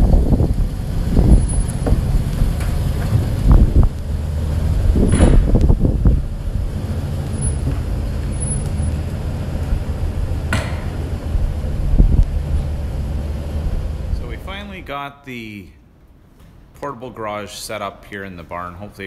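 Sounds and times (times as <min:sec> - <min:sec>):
car engine rumble: 0:00.0 - 0:14.8
knocks: 0:10.5 - 0:11.1.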